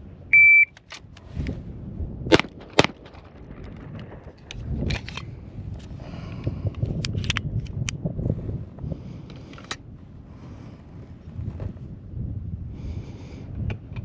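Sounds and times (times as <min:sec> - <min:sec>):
pistol shots: 0:02.3 - 0:03.2.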